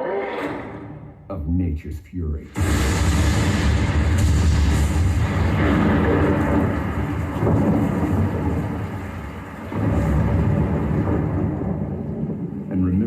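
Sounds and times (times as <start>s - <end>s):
deep thunder: 2.5s - 13.0s
dense rushing noise: 2.6s - 13.0s.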